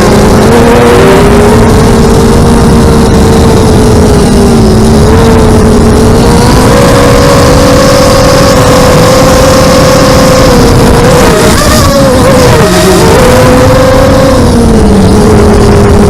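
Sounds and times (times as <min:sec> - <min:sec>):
aircraft motor whining: 0:00.0 - 0:16.0.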